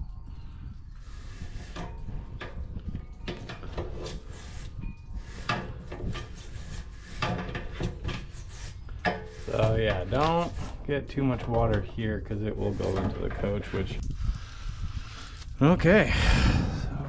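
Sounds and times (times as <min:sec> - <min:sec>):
scraping and clattering knocks in metal tank: 0:01.1 - 0:13.9.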